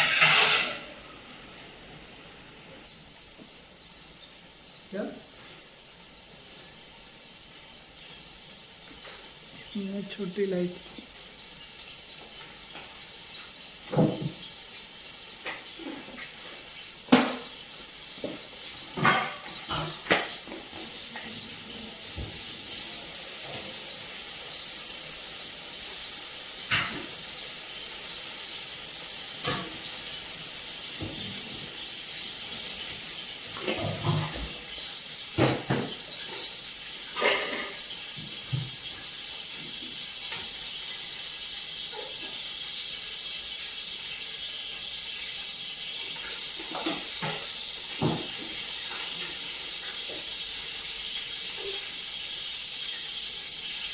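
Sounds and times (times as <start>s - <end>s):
spoon scraping a pot: 0.0s - 1.0s, 37.1s - 38.0s
spices sizzling in hot oil: 0.0s - 53.9s.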